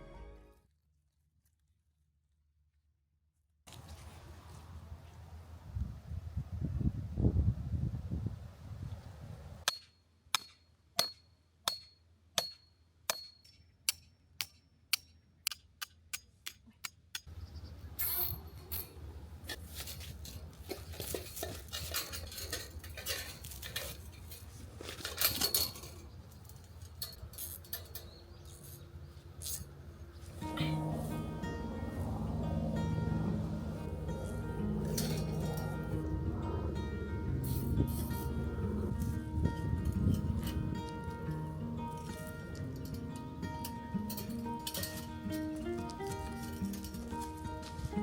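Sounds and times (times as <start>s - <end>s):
rustling and clattering: 18.0s - 30.4s
light ringing clinks: 25.1s - 28.8s, 34.2s - 36.1s.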